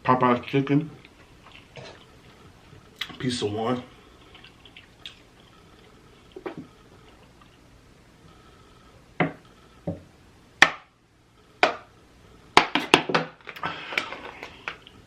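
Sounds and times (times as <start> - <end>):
person chewing with mouth smacks: 1.0 - 3.2, 4.2 - 7.6.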